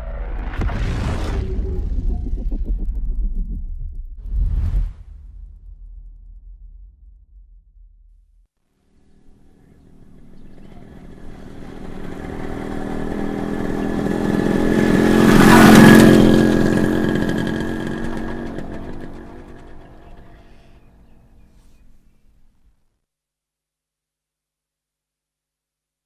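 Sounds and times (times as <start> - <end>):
motorcycle passing by: 9.0 - 22.0.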